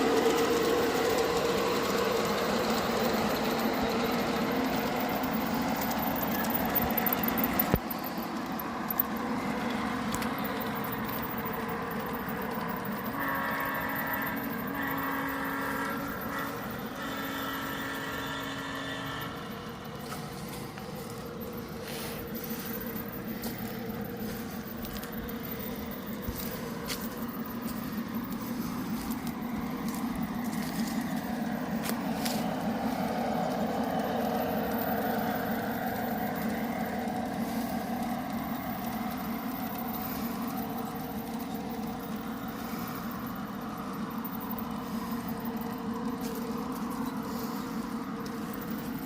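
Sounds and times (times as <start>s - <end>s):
model train wheels and motor rumble: 0.0s - 49.0s
scattered clicks: 2.4s - 13.2s.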